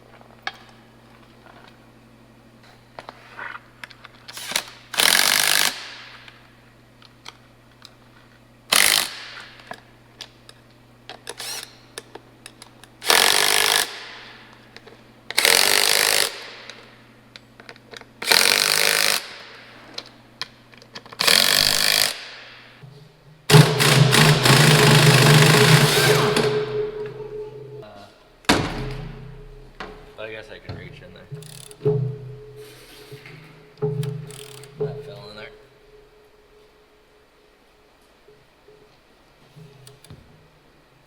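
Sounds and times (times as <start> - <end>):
impact wrench bursts: 4.3 - 6.2, 8.7 - 9.7, 11.3 - 11.8, 13.0 - 14.4, 15.3 - 16.9, 18.2 - 19.6, 21.2 - 22.6, 23.5 - 27.2.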